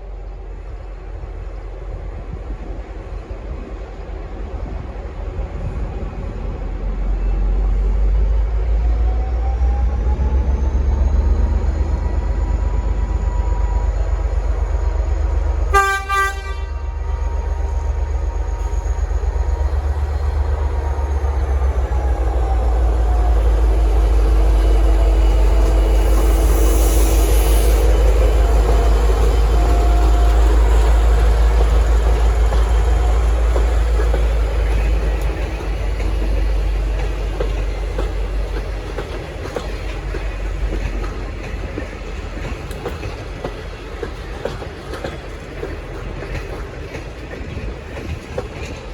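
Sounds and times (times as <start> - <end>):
diesel locomotive rumbling: 0.0 - 48.9
train horn blast: 15.7 - 18.9.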